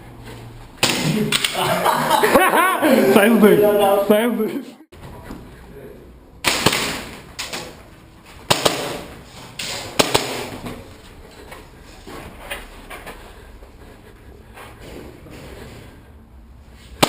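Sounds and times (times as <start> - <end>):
sharp knocks and bangs: 6.4 - 7.8, 8.4 - 10.8.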